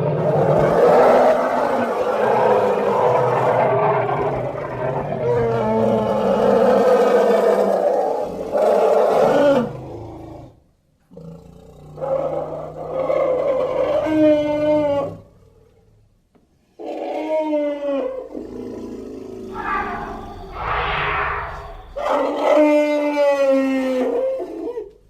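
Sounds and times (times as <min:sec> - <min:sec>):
elephant roar: 0:18.3 - 0:22.6
elephant tonal call: 0:19.4 - 0:22.7.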